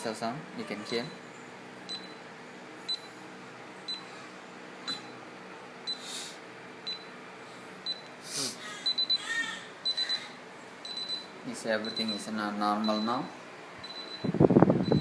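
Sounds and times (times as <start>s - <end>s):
alarm keypad beeping: 8.8s - 15.0s.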